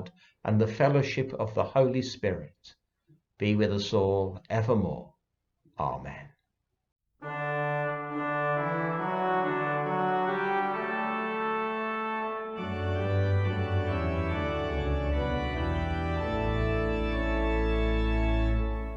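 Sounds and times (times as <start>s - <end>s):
organ playing held chords: 7.2s - 18.9s.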